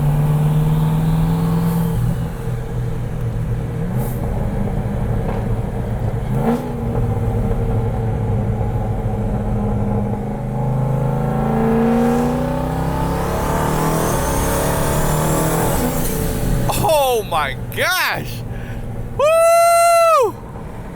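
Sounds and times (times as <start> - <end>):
car engine accelerating: 0.0 - 16.7.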